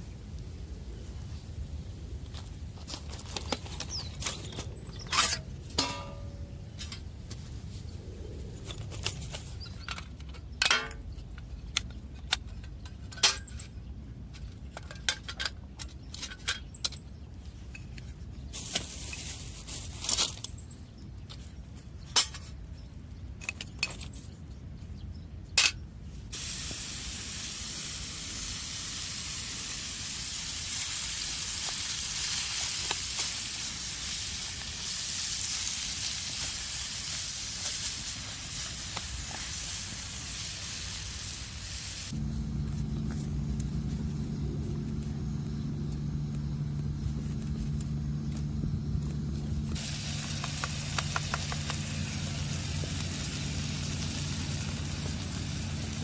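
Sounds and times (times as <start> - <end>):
steady hiss: 26.3 - 42.2, 49.7 - 56.0.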